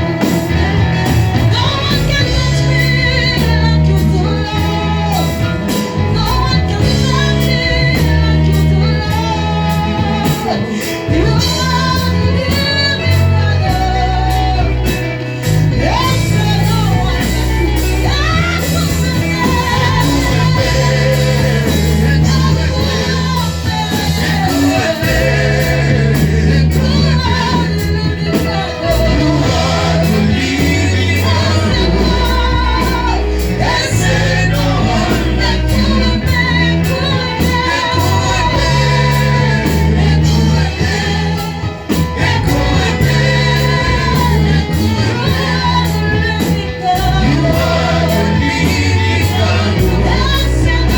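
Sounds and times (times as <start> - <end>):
deep bass line: 0.0 - 50.9
gospel worship song with band: 0.0 - 50.9.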